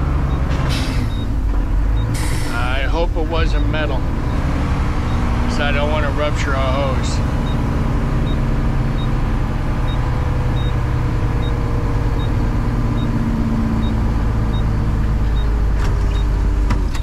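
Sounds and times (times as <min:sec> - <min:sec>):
garbage truck engine humming: 0:00.0 - 0:17.0
short high-pitched beeps: 0:10.6 - 0:10.8.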